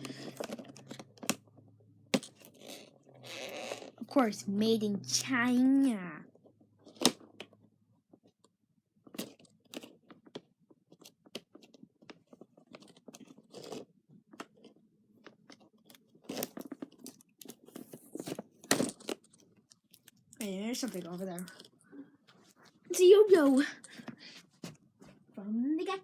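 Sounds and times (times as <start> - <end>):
toy packaging crackling and scraping: 0.0 - 24.8.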